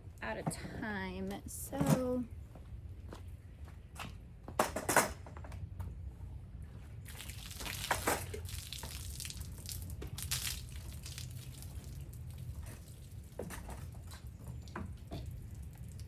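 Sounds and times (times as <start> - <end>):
water splashing on truck body: 7.1 - 16.0.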